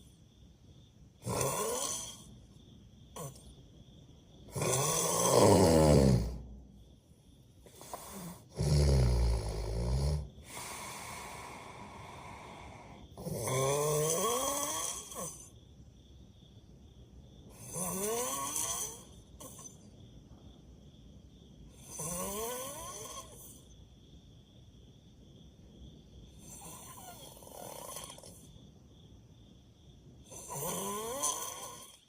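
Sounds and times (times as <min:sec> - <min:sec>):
person snoring: 0:01.2 - 0:02.3, 0:03.2 - 0:03.5, 0:04.5 - 0:06.5, 0:07.6 - 0:15.6, 0:17.5 - 0:19.8, 0:21.7 - 0:23.7, 0:26.4 - 0:28.5, 0:30.3 - 0:32.0
faint breathing: 0:10.2 - 0:13.2.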